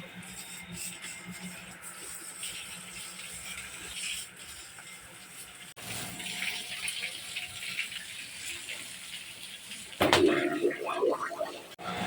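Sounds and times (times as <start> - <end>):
running water splashing: 1.9 - 11.8.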